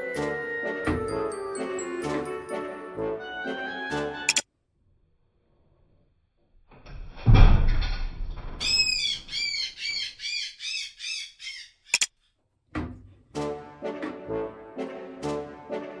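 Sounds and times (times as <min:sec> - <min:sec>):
brass music: 0:00.0 - 0:04.4, 0:13.4 - 0:16.0
click: 0:11.9 - 0:12.1.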